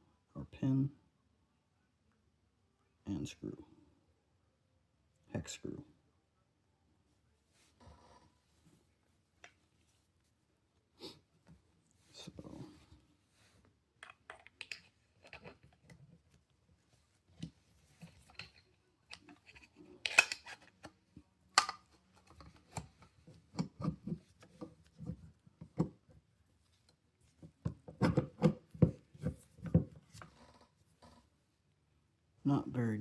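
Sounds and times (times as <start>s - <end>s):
pistol parts clicking and scraping: 14.0s - 16.0s, 17.4s - 21.0s.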